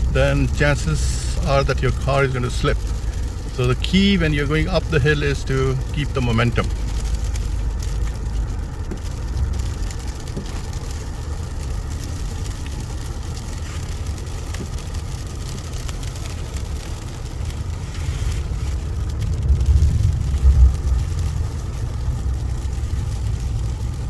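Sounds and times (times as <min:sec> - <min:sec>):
car engine and tyres rumbling: 0:00.0 - 0:24.0.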